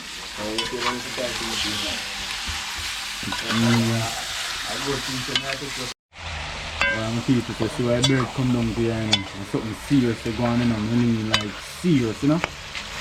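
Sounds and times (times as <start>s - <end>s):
duck frying with hissing sizzle: 0.0s - 13.0s
man's voice: 3.2s - 5.9s, 7.0s - 12.5s.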